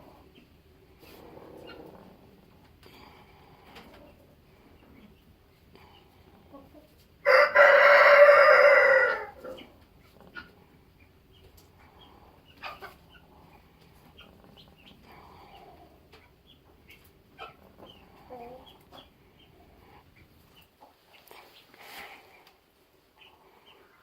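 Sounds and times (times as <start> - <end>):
faint chicken clucking: 0.0 - 24.0
rooster crowing: 7.2 - 9.5.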